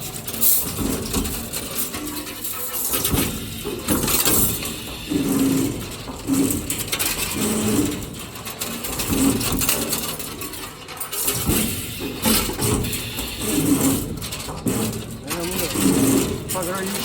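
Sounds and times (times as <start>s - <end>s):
steel bars clinking and clattering: 0.0s - 17.0s.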